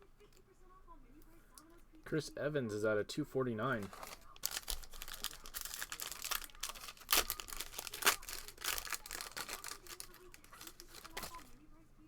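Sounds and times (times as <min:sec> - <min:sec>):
cards scraping and wrapper crinkling: 0:03.7 - 0:11.6.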